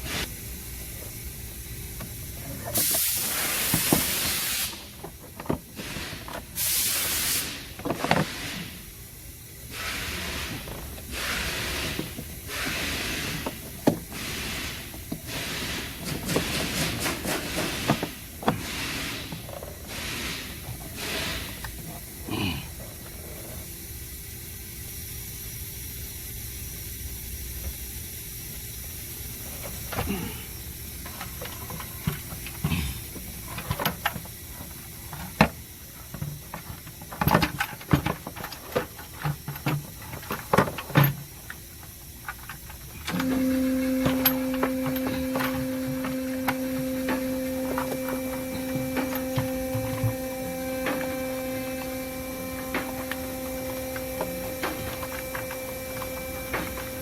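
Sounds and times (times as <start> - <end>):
electrical hum: 26.6 - 57.0
sharp clicks and knocks: 42.3 - 57.0.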